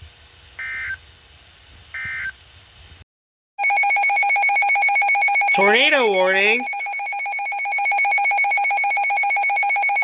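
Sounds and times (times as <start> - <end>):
two-tone digital chirps: 5.0 - 10.0
steady electronic alert tone: 5.4 - 7.9.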